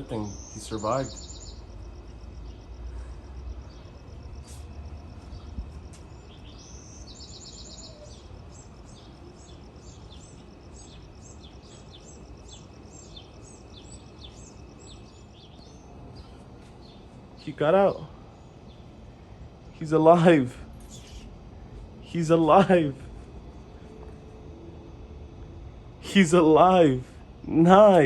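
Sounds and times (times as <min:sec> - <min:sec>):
small bird chirping: 0:00.0 - 0:02.8, 0:03.5 - 0:19.2, 0:20.7 - 0:21.8
low outdoor rumble: 0:00.0 - 0:28.0.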